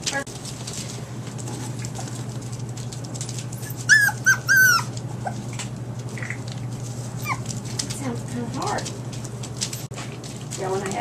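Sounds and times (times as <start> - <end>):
puppy whimpering: 3.6 - 5.5, 7.2 - 7.5.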